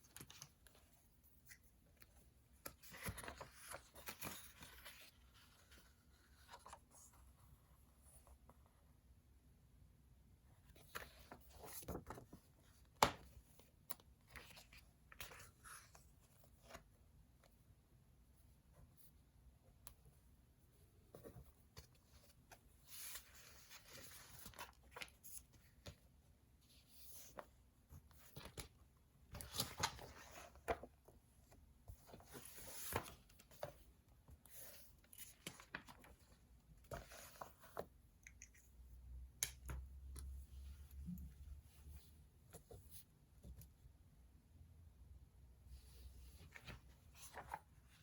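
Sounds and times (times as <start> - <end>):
paper rustling: 1.4 - 7.2, 10.7 - 12.5, 31.9 - 33.8, 34.4 - 37.9, 46.0 - 48.0.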